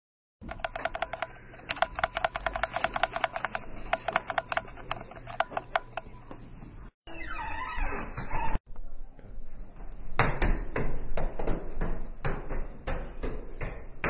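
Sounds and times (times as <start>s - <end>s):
sharp clicks and taps: 0.4s - 6.4s.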